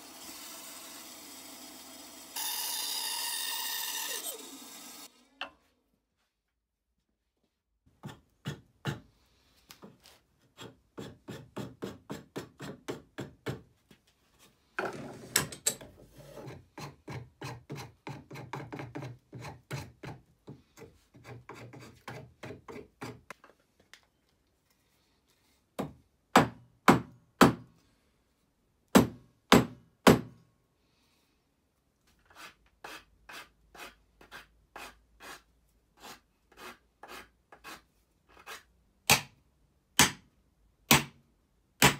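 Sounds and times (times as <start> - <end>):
rasp strokes on wood: 32.2 - 38.7.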